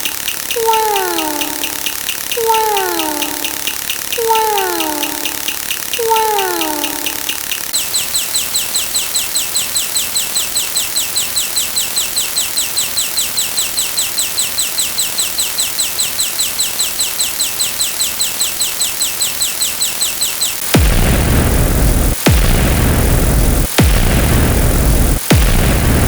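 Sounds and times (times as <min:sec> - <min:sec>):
car alarm chirps: 0:00.0 - 0:20.6
falling pitched tone: 0:00.5 - 0:07.5.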